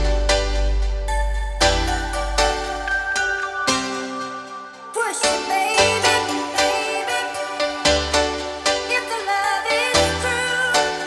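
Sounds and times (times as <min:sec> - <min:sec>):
background music with bass: 0:00.0 - 0:11.0.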